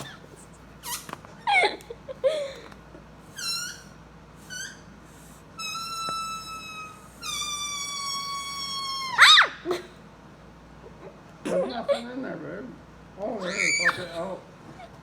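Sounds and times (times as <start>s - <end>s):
balloon neck squealing: 0.0s - 1.5s, 3.3s - 4.9s, 5.6s - 9.5s, 13.4s - 14.2s.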